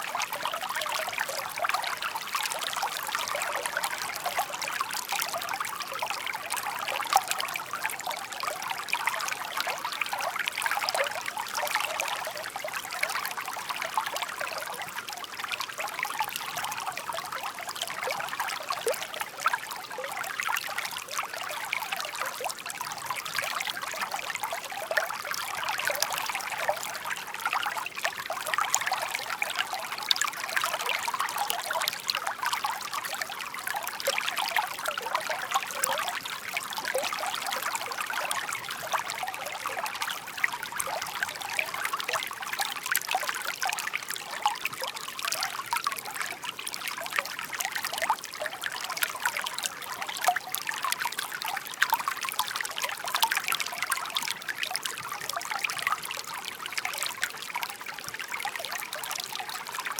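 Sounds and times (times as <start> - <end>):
stream babbling over stones: 0.0 - 59.9.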